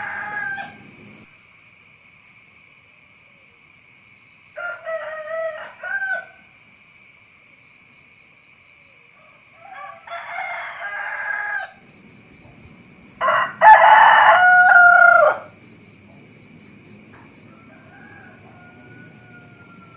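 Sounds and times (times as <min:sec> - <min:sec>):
rooster crowing: 0:00.0 - 0:01.3, 0:04.6 - 0:06.5, 0:09.1 - 0:11.9, 0:13.2 - 0:15.6, 0:17.0 - 0:19.9
cricket-like chirping: 0:00.0 - 0:19.9.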